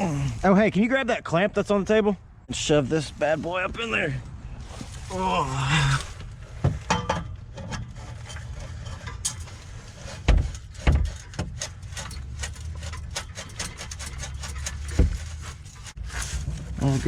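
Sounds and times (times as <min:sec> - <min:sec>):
exhaust pipe knocking and clanking: 0:06.2 - 0:17.0
heavy thumps: 0:10.1 - 0:16.8.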